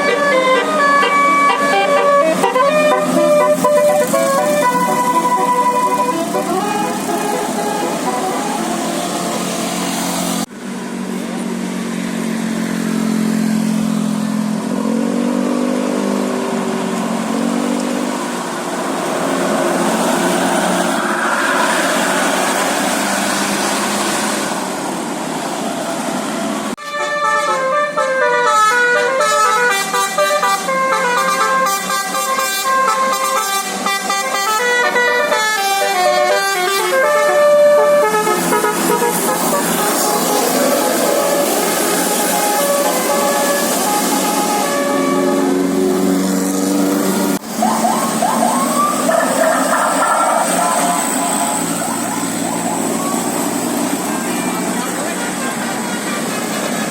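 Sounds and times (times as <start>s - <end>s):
bus musical horn melodies: 0.0s - 10.4s, 26.8s - 48.0s, 49.1s - 52.5s
street noise: 0.0s - 56.9s.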